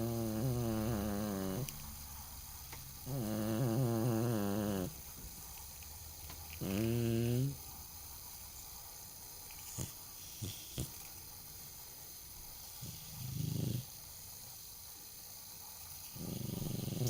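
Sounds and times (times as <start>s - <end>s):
cat snoring: 0.0s - 1.8s, 3.0s - 5.0s, 6.6s - 7.6s, 9.7s - 11.0s, 12.8s - 14.0s, 16.2s - 17.0s.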